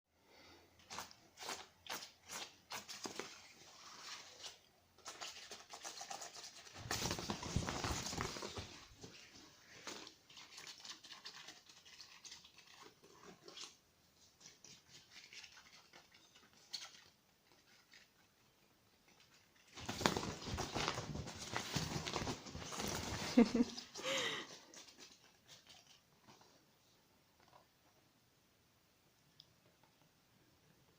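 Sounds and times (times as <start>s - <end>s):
cat playing with rustling toy: 6.4s - 10.1s, 19.5s - 23.9s.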